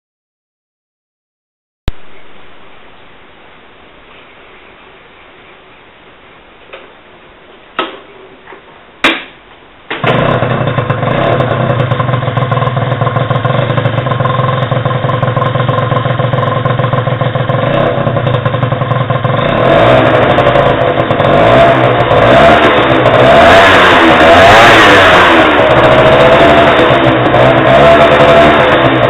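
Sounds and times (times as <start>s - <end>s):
scooter engine idling: 9.9s - 19.6s
scooter engine revving: 10.0s - 29.0s.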